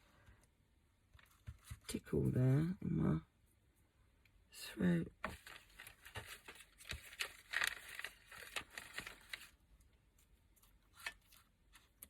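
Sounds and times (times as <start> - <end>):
paper rustling and crinkling: 5.2 - 12.0.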